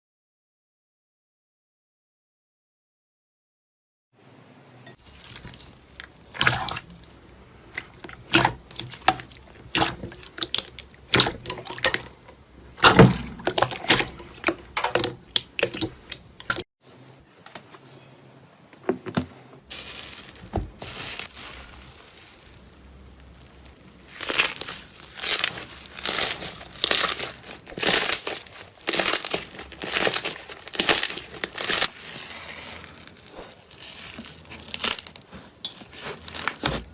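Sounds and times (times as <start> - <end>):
slime squelching and popping: 5.1 - 16.6, 19.8 - 36.9.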